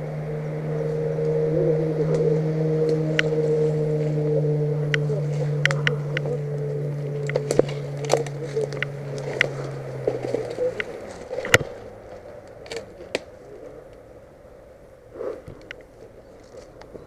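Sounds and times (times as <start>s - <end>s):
low hum: 0.0s - 17.0s
footsteps crunching twigs and leaves: 5.0s - 13.6s.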